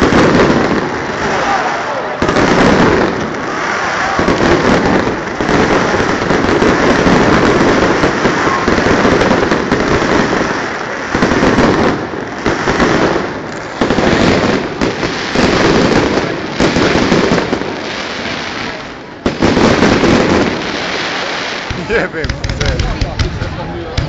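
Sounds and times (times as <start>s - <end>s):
fireworks bangs and crackling: 0.0s - 24.0s.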